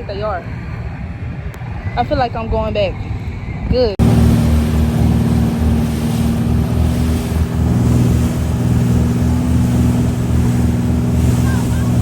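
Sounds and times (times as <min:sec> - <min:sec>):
motorboat engine running: 0:04.0 - 0:12.0.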